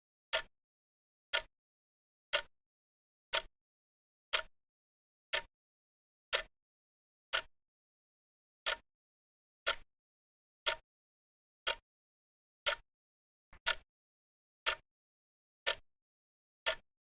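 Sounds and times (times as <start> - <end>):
clock ticking: 3.3 - 3.5, 5.3 - 5.5, 6.3 - 6.5, 10.6 - 10.8, 11.6 - 11.8, 12.6 - 12.8, 13.6 - 13.8, 14.6 - 14.8, 15.6 - 15.8, 16.6 - 16.8.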